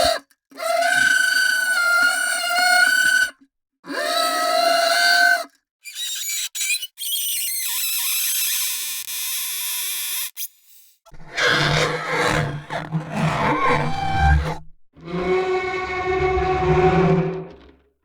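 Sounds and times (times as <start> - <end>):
cello bow on hard materials: 11.1 - 17.8.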